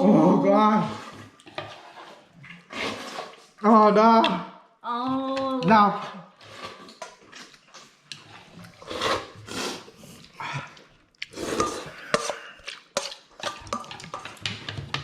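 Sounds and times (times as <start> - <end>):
person slurping noodles: 0.0 - 3.6, 6.0 - 14.0.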